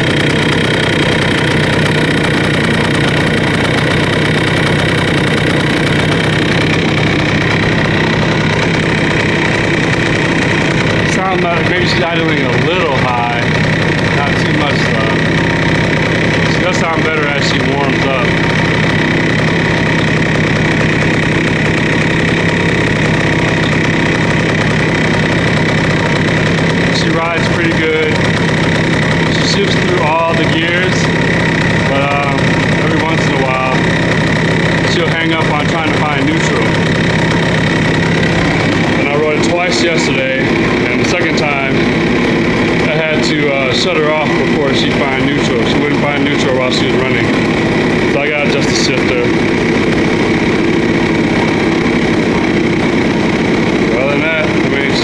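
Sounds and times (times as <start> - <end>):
two-stroke engine idling: 0.0 - 55.0.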